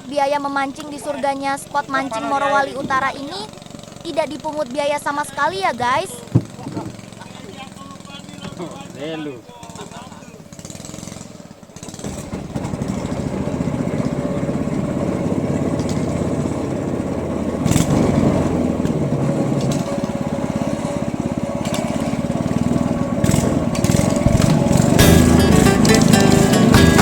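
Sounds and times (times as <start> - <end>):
boat engine running: 0.0 - 27.0
sharp knock: 24.2 - 27.0.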